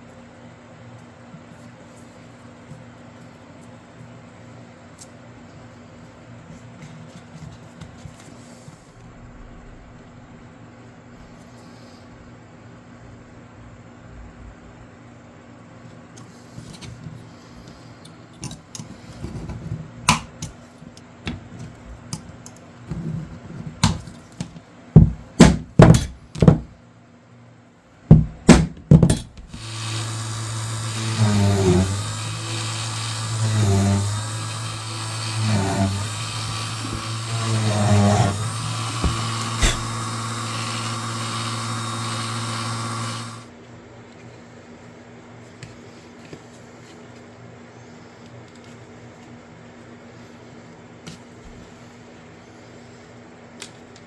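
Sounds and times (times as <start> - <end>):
small power tool running: 29.4 - 43.5.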